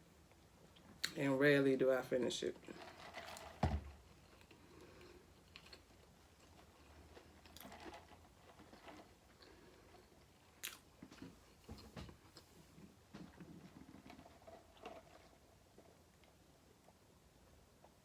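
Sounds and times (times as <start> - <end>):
person chewing food: 4.1 - 17.0.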